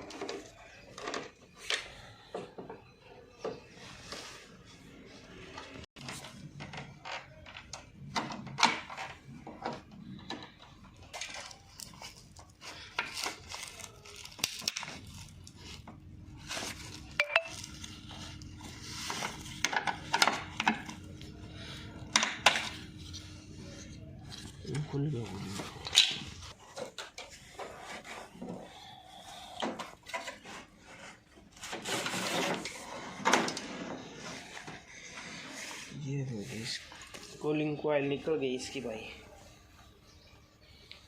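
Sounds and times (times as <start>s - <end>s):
plastic and metal parts rattling: 0.0s - 2.0s.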